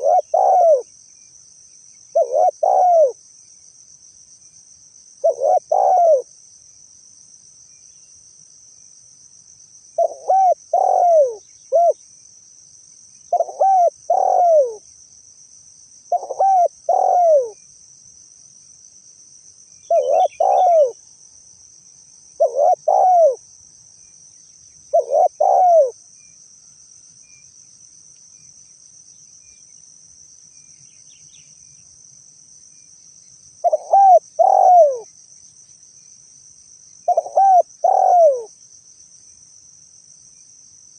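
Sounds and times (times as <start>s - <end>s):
dove cooing: 0.0s - 0.9s, 2.1s - 3.2s, 5.2s - 6.3s, 10.0s - 12.0s, 13.3s - 14.8s, 16.1s - 17.6s, 19.9s - 21.0s, 22.4s - 23.4s, 24.9s - 26.0s, 33.6s - 35.1s, 37.1s - 38.5s
high insect trill: 0.0s - 40.9s.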